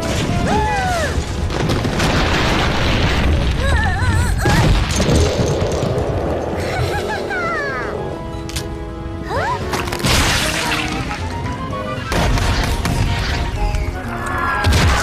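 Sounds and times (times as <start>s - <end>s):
background music: 0.0s - 2.8s, 6.1s - 15.0s
rumbling boom and crash: 0.0s - 7.5s.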